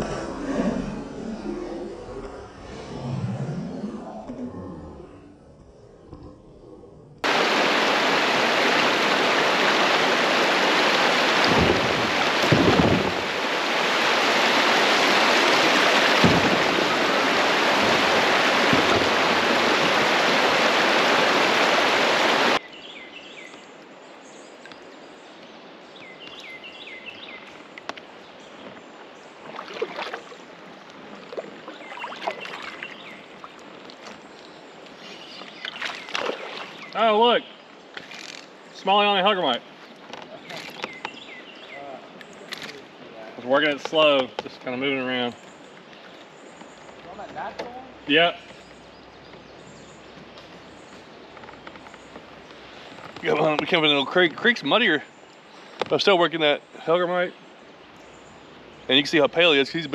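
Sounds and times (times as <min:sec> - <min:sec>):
quiet water hiss: 0:00.0 - 0:59.9
river water rushing: 0:07.3 - 0:22.6.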